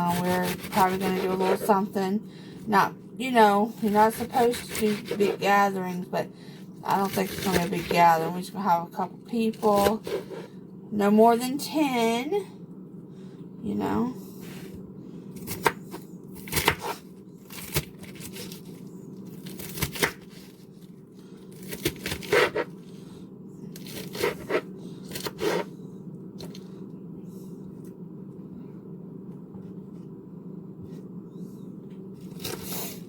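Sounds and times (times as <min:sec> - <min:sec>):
knife cutting lettuce on board: 0:00.0 - 0:01.7, 0:03.9 - 0:05.4, 0:09.6 - 0:10.5, 0:15.4 - 0:18.7, 0:19.4 - 0:20.6, 0:21.6 - 0:22.7
steady low hum: 0:00.0 - 0:33.0.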